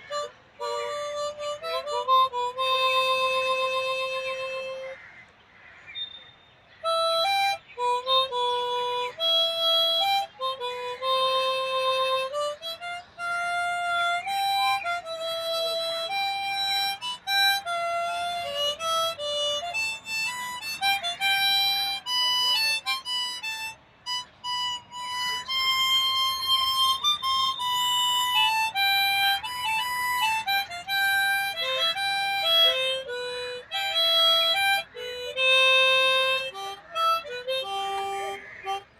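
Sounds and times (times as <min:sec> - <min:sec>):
solo harmonica melody: 0:00.0 - 0:05.1, 0:06.8 - 0:38.9.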